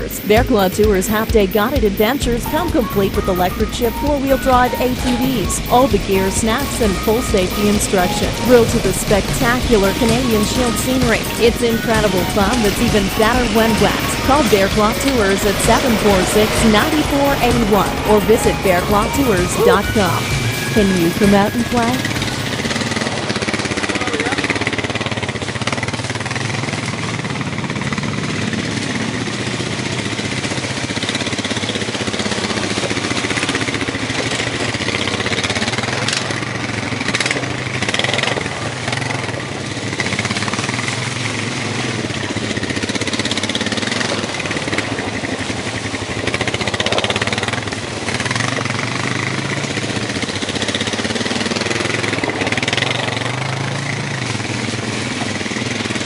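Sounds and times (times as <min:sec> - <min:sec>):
atv engine revving: 0:21.8 - 0:56.0.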